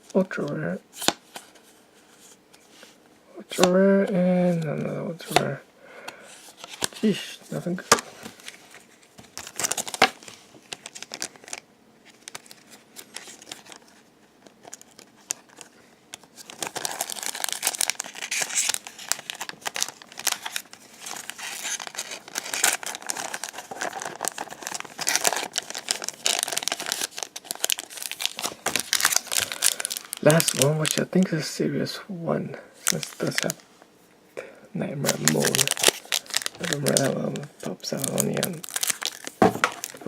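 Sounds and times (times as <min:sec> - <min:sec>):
wrapper crinkling and tearing: 0:06.4 - 0:31.1, 0:32.8 - 0:33.7, 0:35.0 - 0:40.0.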